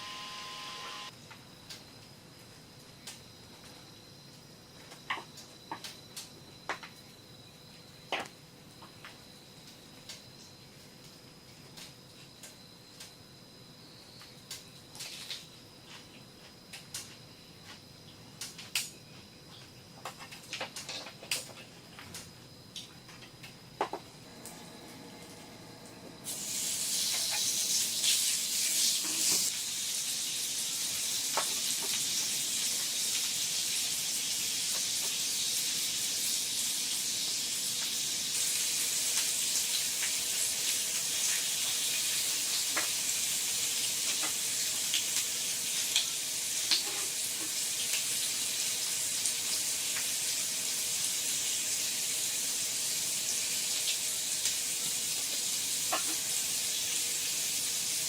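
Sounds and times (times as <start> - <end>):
steady rain hiss: 26.2 - 58.0.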